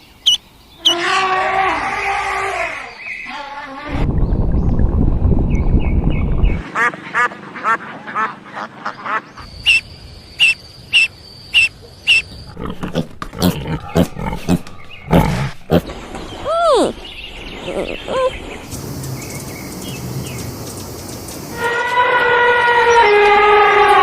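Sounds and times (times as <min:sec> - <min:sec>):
farm animal calls: 0:00.2 - 0:03.9, 0:06.8 - 0:09.8, 0:10.4 - 0:16.0.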